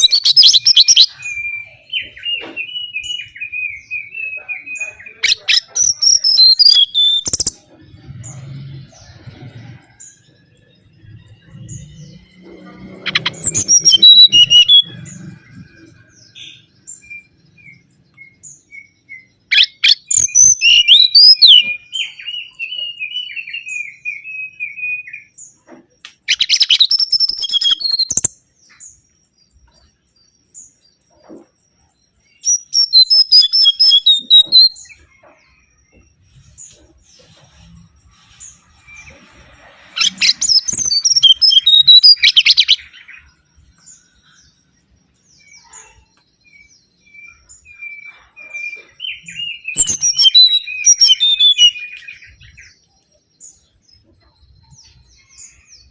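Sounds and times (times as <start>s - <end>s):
bird whistling song: 0.0s - 7.6s, 12.8s - 25.4s, 26.1s - 28.4s, 32.4s - 35.4s, 39.9s - 44.0s, 45.4s - 52.9s.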